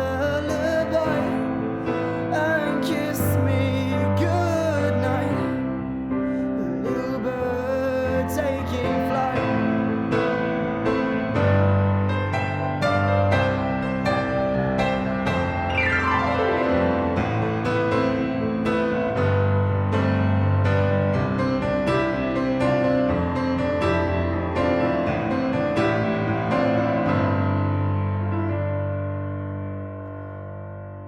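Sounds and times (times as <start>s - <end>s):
piano playing chords: 0.0s - 31.0s
falling sweep: 15.5s - 17.5s.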